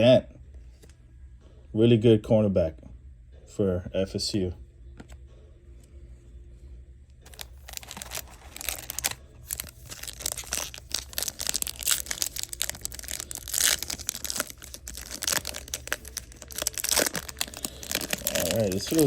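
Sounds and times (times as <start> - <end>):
wrapper tearing and crinkling: 7.3 - 19.0.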